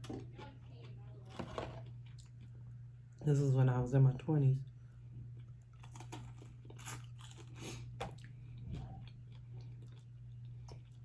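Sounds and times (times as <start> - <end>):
chewing food: 0.0 - 2.7, 5.2 - 11.0
steady low hum: 0.0 - 11.0.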